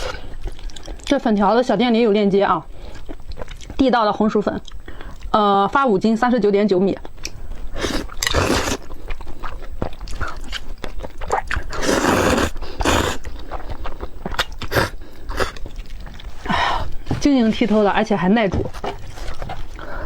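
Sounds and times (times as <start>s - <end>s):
wet chewing and biting: 0.0s - 1.4s, 2.7s - 3.9s, 6.9s - 17.0s.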